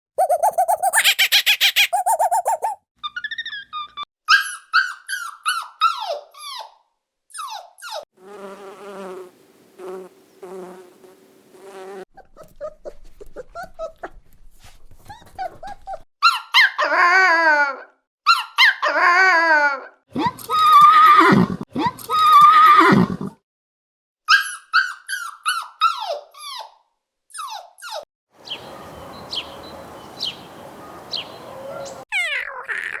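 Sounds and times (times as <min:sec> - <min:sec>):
dog yelping: 0:00.2 - 0:02.8, 0:04.3 - 0:06.7, 0:15.1 - 0:17.1, 0:24.3 - 0:26.7, 0:31.5 - 0:33.0
short animal calls: 0:00.2 - 0:02.8
horse whinnying: 0:20.8 - 0:21.6, 0:22.3 - 0:23.4.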